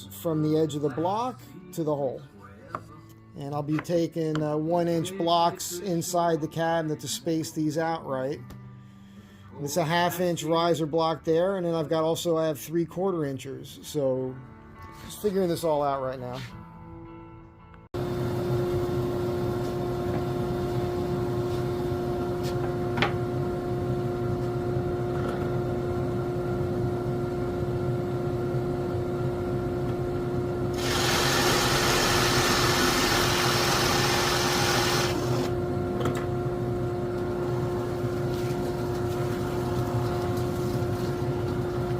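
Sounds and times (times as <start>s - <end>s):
drill running: 30.7s - 35.5s
drill bit rasping into wood: 30.8s - 35.5s.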